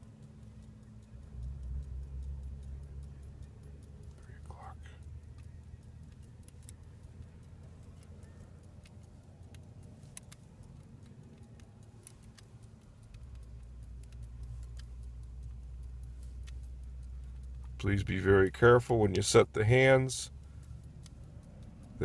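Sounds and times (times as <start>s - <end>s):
low steady hum: 0.0s - 22.0s
small metallic watch clicks: 0.0s - 22.0s.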